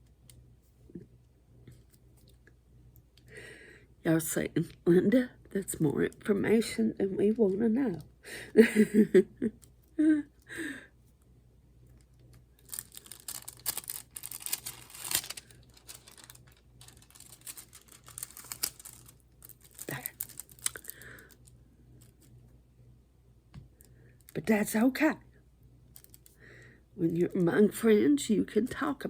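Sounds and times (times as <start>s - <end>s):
rustling and light clicking: 1.6s - 3.3s, 11.0s - 22.6s, 25.9s - 26.4s.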